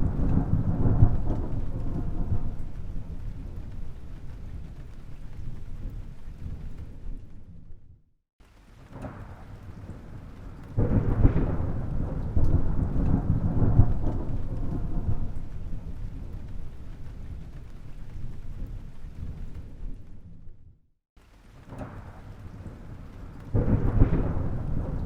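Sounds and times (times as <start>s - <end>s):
loud thunder clap: 0.0s - 7.3s, 8.8s - 20.0s, 21.6s - 25.0s
thunder rumbling: 0.0s - 8.0s, 8.6s - 20.8s, 21.5s - 25.0s.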